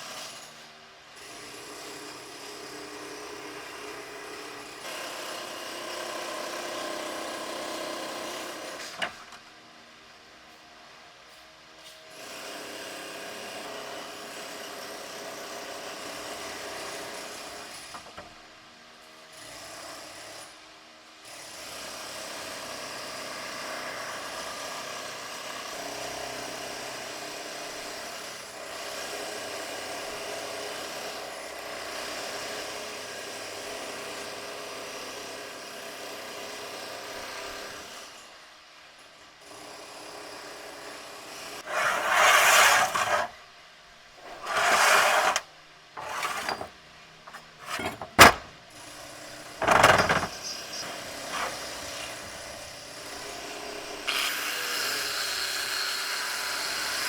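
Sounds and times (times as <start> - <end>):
loud tool bursts: 41.6 - 43.4, 44.2 - 46.7, 47.3 - 53.4
workshop tool running: 41.6 - 43.4, 44.2 - 56.6.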